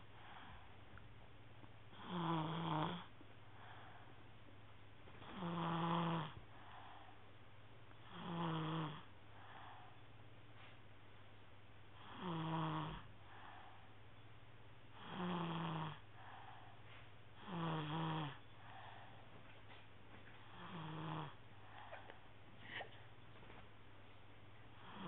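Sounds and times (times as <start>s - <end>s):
faint steady hum: 0.0s - 25.0s
person snoring: 2.0s - 3.1s, 5.2s - 6.4s, 8.1s - 9.1s, 12.0s - 13.5s, 15.0s - 16.1s, 17.4s - 18.4s, 20.5s - 22.1s, 24.8s - 25.0s
soft breath out: 3.4s - 4.3s, 6.4s - 7.4s, 9.3s - 10.8s, 13.2s - 14.2s, 16.1s - 17.3s, 18.5s - 19.8s, 21.5s - 23.6s.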